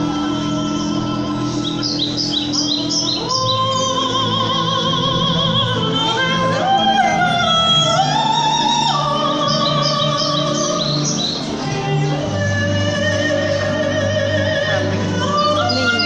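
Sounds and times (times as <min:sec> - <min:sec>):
opera-style voice singing: 0:00.0 - 0:16.0
bird-like chirps: 0:01.5 - 0:04.0.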